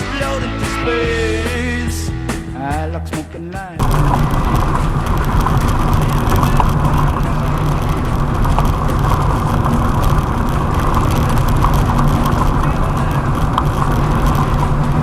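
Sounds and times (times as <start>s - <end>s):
car engine and road noise: 3.8s - 15.0s
faint ticks: 3.8s - 15.0s.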